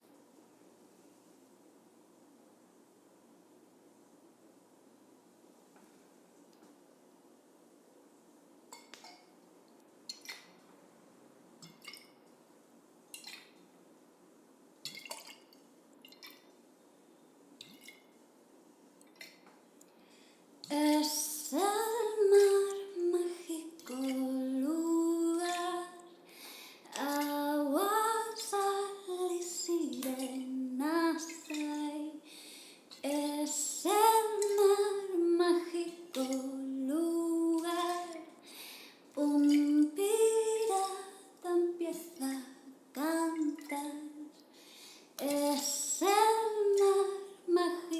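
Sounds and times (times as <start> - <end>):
water drops falling: 10.1 - 10.6, 11.6 - 12.3, 13.1 - 13.6, 14.8 - 16.6, 17.6 - 18.1, 23.8 - 24.4, 25.3 - 28.8, 29.8 - 32.0, 36.1 - 36.6, 37.6 - 38.3, 39.2 - 39.9
woman singing slow melody: 20.6 - 44.4, 45.2 - 47.9.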